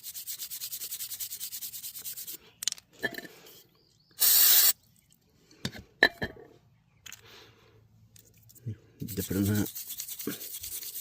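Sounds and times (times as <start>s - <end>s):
stiff brush scrubbing: 0.0s - 2.4s, 9.0s - 11.0s
parts clicking and knocking: 2.6s - 3.3s, 5.1s - 7.3s
aerosol spray hissing: 4.2s - 4.7s.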